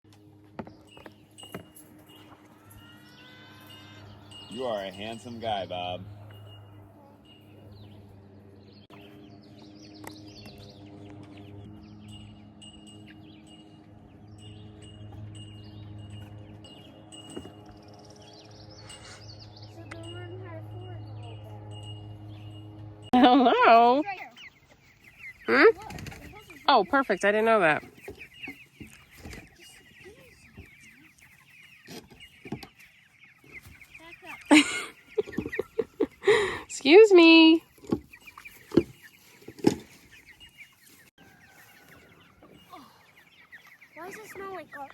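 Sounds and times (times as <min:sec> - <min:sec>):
birds chirping: 0:00.1 - 0:44.9
chickens peeping and clucking: 0:00.1 - 0:44.9
steady low hum: 0:04.0 - 0:26.3.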